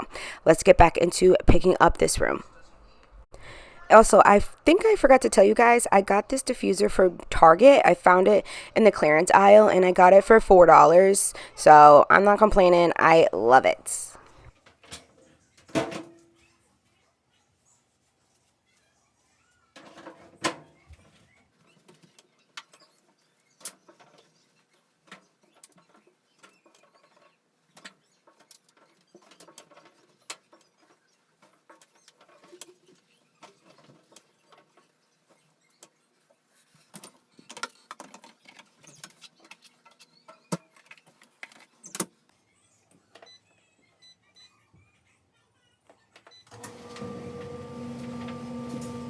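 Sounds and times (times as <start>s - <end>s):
household items clicking and knocking: 36.8s - 42.3s.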